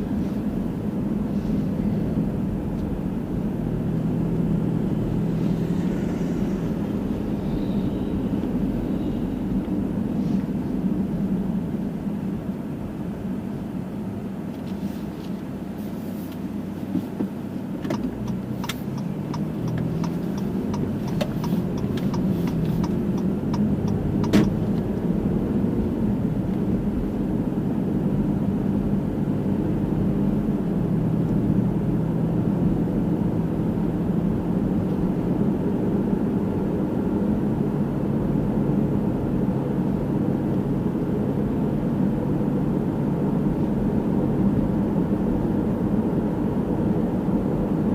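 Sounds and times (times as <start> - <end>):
car engine and road noise: 0.0 - 47.9
evenly spaced ticks: 17.9 - 24.0.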